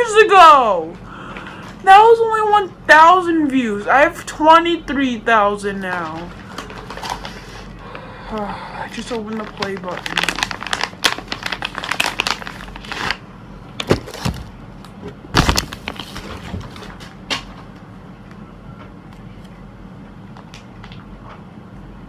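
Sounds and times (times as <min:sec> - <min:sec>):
low steady hum: 0:00.0 - 0:22.0
packaging crinkling: 0:05.8 - 0:07.8, 0:09.0 - 0:13.2, 0:13.8 - 0:14.5, 0:15.4 - 0:17.1.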